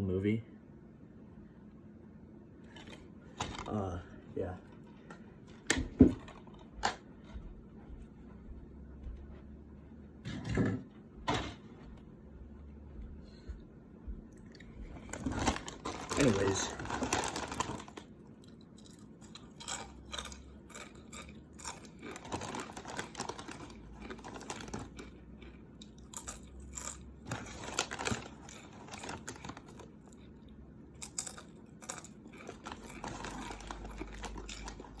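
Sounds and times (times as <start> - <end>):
chips crunching while chewed: 14.4 - 35.0.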